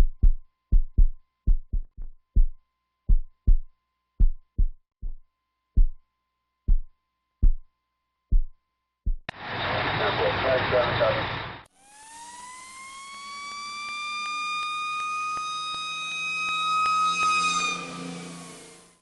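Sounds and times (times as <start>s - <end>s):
heartbeat thumps: 0.0s - 5.2s, 5.8s - 6.0s, 6.7s - 7.7s, 8.3s - 9.3s.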